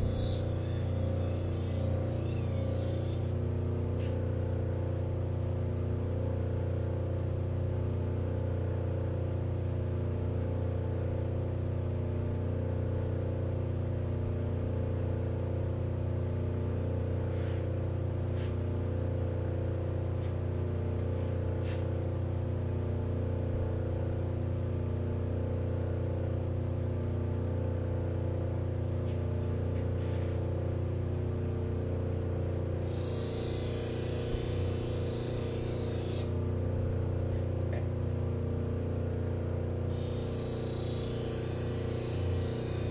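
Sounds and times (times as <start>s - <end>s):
knife grinding on wheel: 0.0s - 3.4s, 32.8s - 36.4s, 39.9s - 42.9s
bench grinder motor humming: 0.0s - 3.5s, 32.8s - 36.7s, 39.9s - 42.9s.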